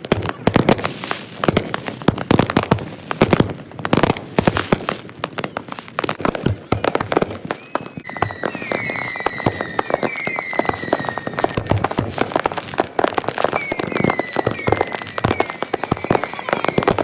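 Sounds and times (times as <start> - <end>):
fireworks popping and crackling: 0.0 - 17.0
steady high whistle: 7.5 - 12.0, 12.8 - 17.0.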